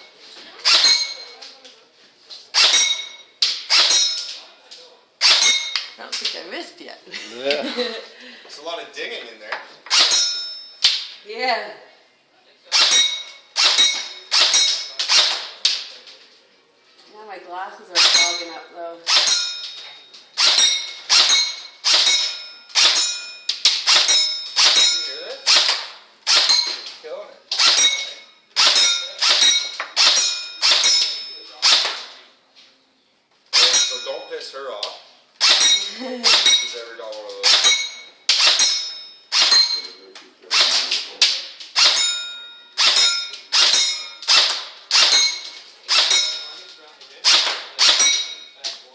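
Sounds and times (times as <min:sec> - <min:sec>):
airsoft gun shots: 0:02.6 - 0:04.2, 0:05.2 - 0:05.7, 0:09.9 - 0:10.3, 0:12.7 - 0:15.8, 0:19.1 - 0:19.5, 0:20.4 - 0:26.8, 0:27.6 - 0:28.0, 0:28.6 - 0:32.2, 0:35.4 - 0:36.7, 0:37.4 - 0:39.8, 0:40.5 - 0:42.1, 0:42.8 - 0:46.4, 0:47.2 - 0:48.3.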